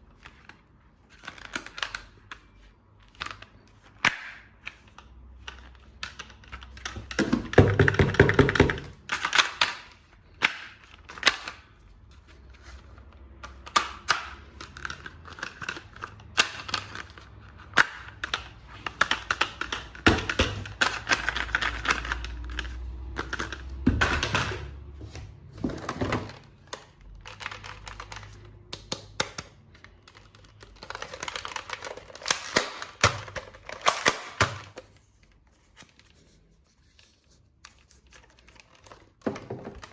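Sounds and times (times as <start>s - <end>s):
plastic toy parts clicking: 13.4s - 24.7s, 26.2s - 34.9s.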